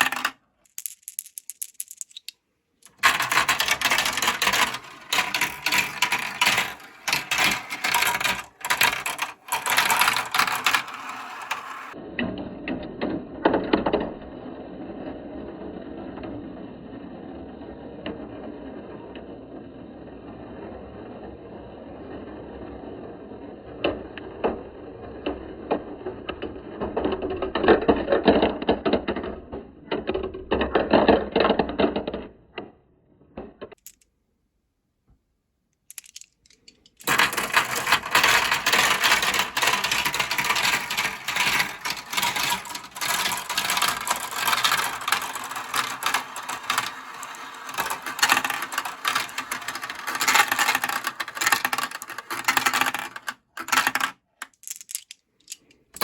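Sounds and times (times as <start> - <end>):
marbles clattering down plastic run: 0.0 - 12.0, 35.9 - 56.0.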